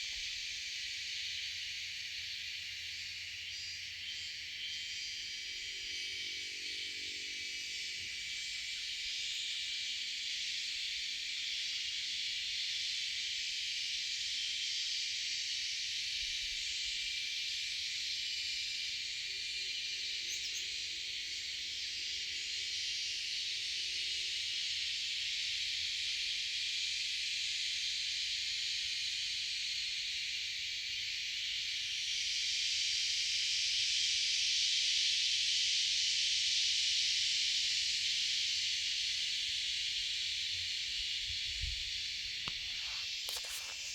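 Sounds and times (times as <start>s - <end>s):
insects buzzing: 28.1s - 43.9s.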